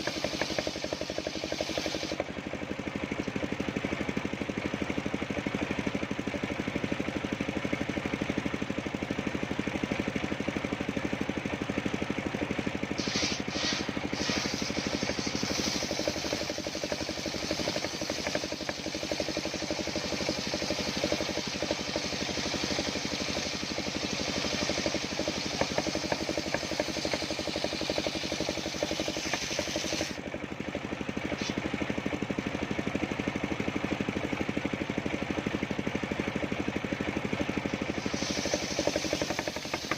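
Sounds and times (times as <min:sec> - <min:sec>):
saw blade cutting wood: 0:00.0 - 0:02.3, 0:12.9 - 0:30.2, 0:31.3 - 0:31.6, 0:37.8 - 0:39.9
sawmill engine running: 0:00.0 - 0:39.9.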